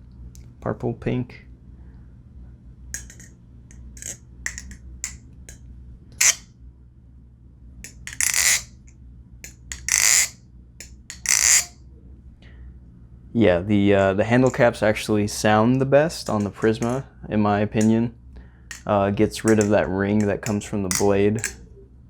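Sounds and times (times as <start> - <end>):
balisong handles clacking: 3.0 - 5.2, 6.2 - 6.4, 7.9 - 8.8, 9.4 - 11.8, 16.2 - 17.0, 18.7 - 21.6.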